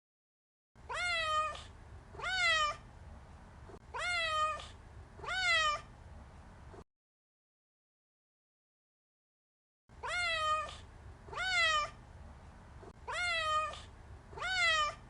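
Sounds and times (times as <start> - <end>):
cat meowing: 0.8 - 2.8, 3.9 - 5.9, 10.0 - 12.0, 13.0 - 15.0.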